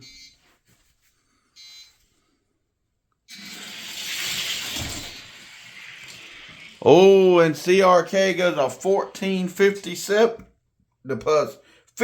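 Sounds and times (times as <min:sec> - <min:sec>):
toy cars rushing whir: 0:03.3 - 0:06.9.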